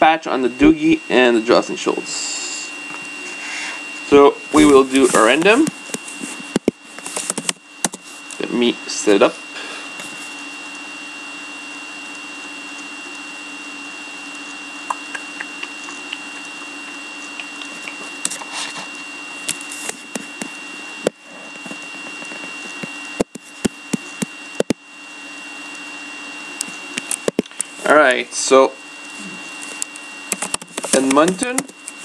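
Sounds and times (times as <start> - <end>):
electrical hum: 0.0 - 32.0
keyboard typing and mouse clicks: 30.3 - 31.7.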